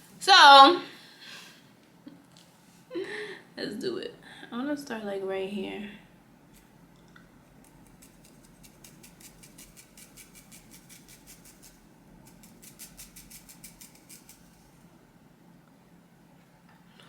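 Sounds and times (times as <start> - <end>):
shears snipping hair: 7.6 - 14.6.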